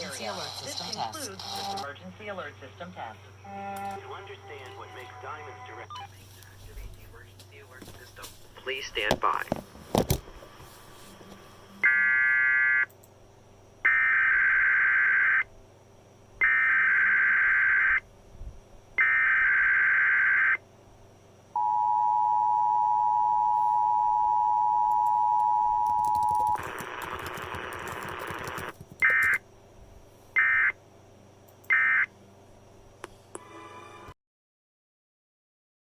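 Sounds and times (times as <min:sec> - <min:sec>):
buzzy data bursts: 0:00.0 - 0:01.9, 0:26.6 - 0:29.4
static hiss: 0:00.0 - 0:11.9, 0:26.6 - 0:28.8
two-tone attention signal: 0:03.4 - 0:06.1.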